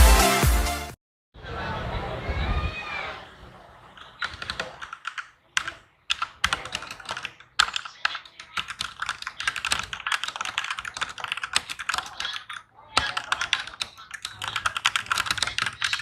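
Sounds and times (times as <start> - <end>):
mechanical keyboard typing: 4.0 - 16.0.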